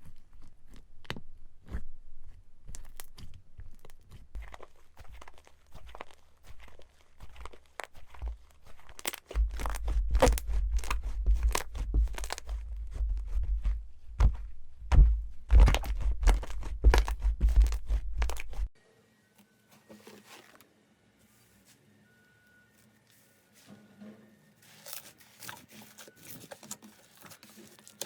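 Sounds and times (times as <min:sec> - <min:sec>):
low handling thumps: 0:09.4 - 0:18.7.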